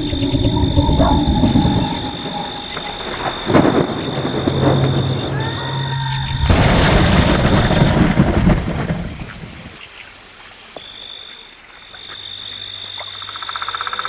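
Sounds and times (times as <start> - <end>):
thunderclap rumbling: 0.0 - 9.8
rain ambience: 0.0 - 12.1
high-pitched insect trill: 0.0 - 14.0.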